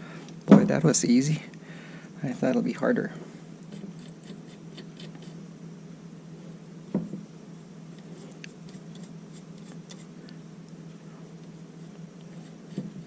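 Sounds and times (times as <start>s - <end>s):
steady low hum: 0.0s - 13.0s
soft thump: 6.9s - 7.2s.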